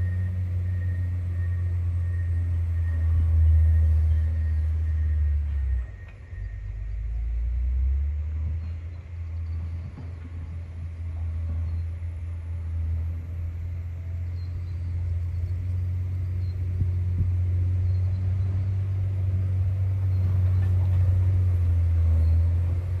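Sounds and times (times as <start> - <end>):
diesel engine rumbling: 0.0 - 23.0.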